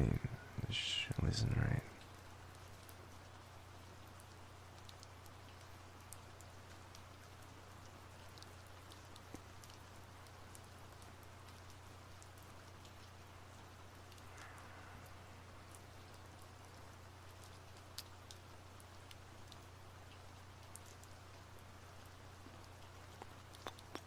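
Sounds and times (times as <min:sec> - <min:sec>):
soft steady rain: 0:00.0 - 0:24.0
low hum: 0:13.3 - 0:17.5.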